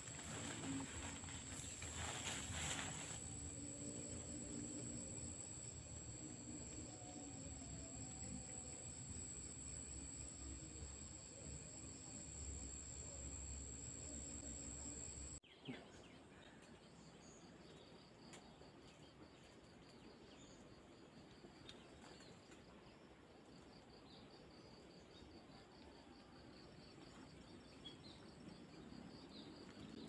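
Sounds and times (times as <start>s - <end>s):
background hiss: 0.0s - 15.4s
night insects chirping: 0.0s - 15.4s.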